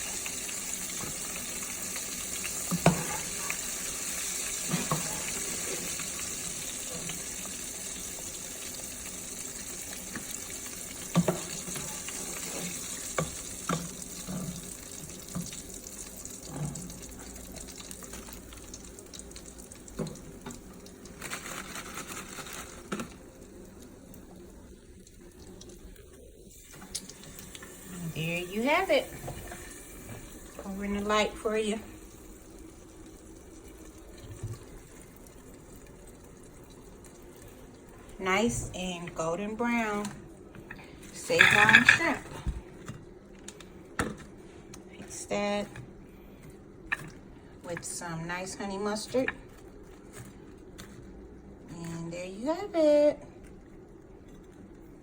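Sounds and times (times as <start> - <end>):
oil sizzling in a pan: 0.0 - 42.3
utensils clinking: 40.7 - 42.4.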